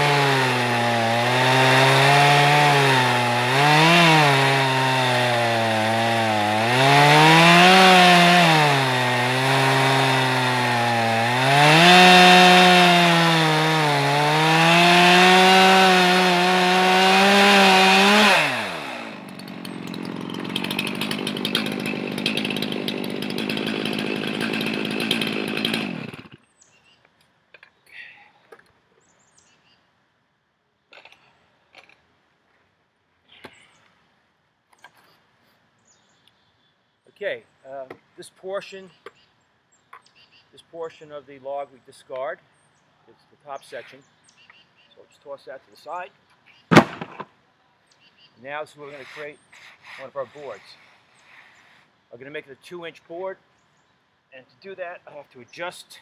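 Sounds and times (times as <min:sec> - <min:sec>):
chainsaw ripping a log: 0:00.0 - 0:26.4, 0:30.9 - 0:32.0, 0:46.7 - 0:47.3.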